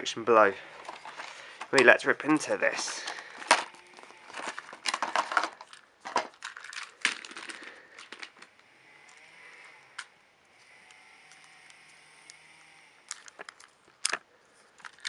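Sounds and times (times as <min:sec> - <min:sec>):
cardboard and plastic packaging ripping: 0:03.0 - 0:08.4.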